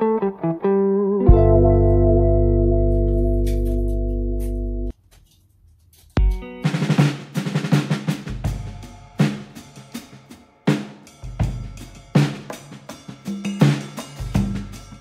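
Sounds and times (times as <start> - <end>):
bass line: 1.2 - 4.9
drum kit beat: 6.2 - 15.0.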